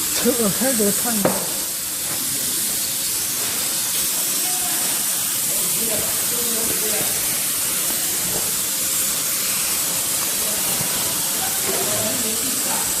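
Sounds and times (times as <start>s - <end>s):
hot air welder hissing: 0.0s - 13.0s.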